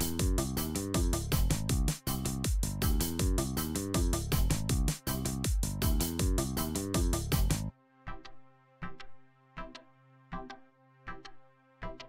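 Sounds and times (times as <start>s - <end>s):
kick drum beat: 0.0s - 7.7s
electronic music: 0.0s - 12.0s.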